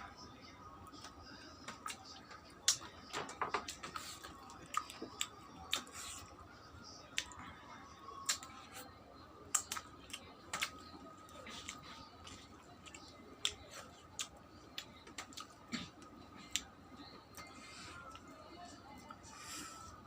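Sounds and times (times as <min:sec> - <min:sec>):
wet chewing and mouth smacks: 0:03.6 - 0:06.2, 0:09.5 - 0:16.7.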